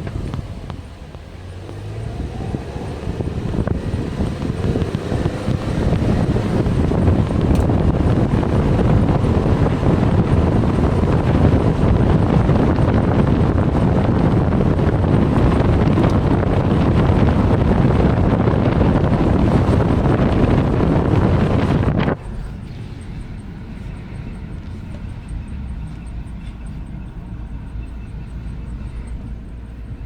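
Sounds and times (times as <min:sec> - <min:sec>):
car road noise: 0:00.0 - 0:30.0
wind on microphone: 0:00.0 - 0:30.0.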